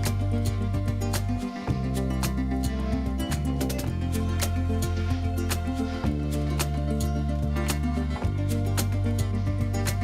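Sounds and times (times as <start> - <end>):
upbeat music with guitar and bass: 0.0 - 10.0.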